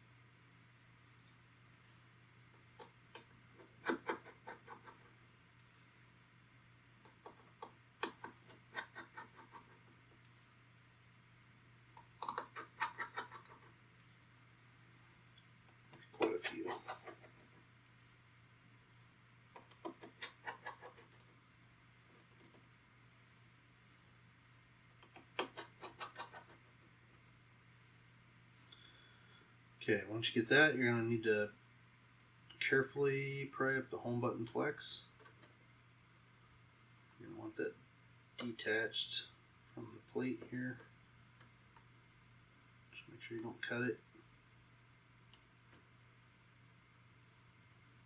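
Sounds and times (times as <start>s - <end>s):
faint steady hum: 0.0s - 48.0s.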